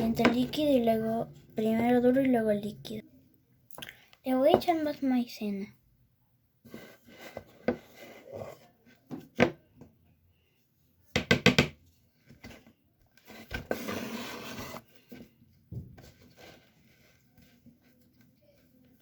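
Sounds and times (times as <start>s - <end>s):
spoon scraping in a cup: 13.3s - 14.9s.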